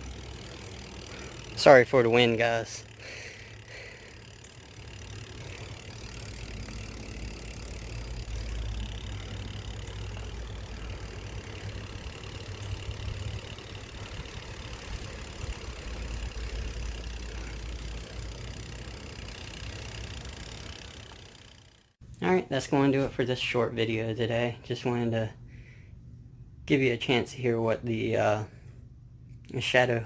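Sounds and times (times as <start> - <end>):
bicycle hub freewheeling ticking: 0.0 - 22.0.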